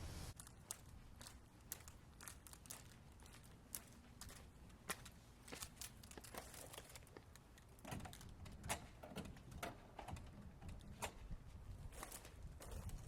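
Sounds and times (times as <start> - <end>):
faint irregular clicks: 0.4 - 8.8.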